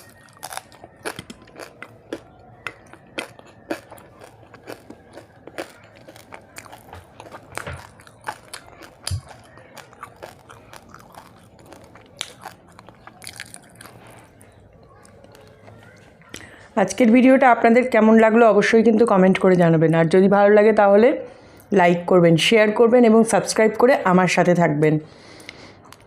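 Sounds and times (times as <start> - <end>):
crunching: 0.0 - 16.6
person chewing food: 0.0 - 16.6, 25.3 - 26.0
mouth clicks and smacks: 0.4 - 16.5.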